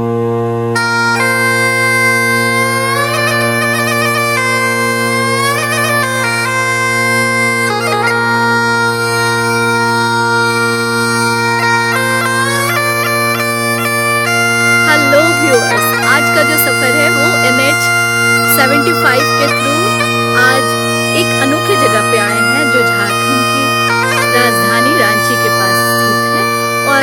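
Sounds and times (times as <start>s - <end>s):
low drone: 0.0s - 27.0s
reedy bagpipe-like melody: 0.0s - 27.0s.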